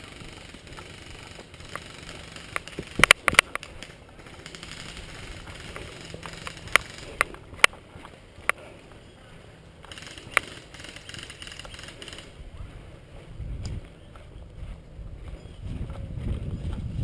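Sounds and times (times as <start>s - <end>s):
airsoft guns firing: 0.0s - 7.3s, 9.9s - 12.4s.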